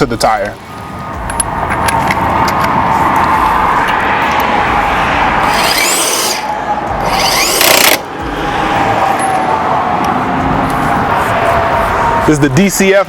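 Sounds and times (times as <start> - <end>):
impact wrench bursts: 5.4 - 6.4, 7.0 - 8.1.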